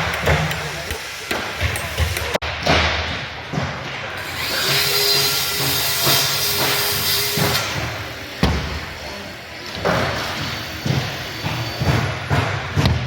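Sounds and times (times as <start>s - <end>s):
power tool running: 4.2s - 12.4s
hammering knocks: 9.7s - 13.0s.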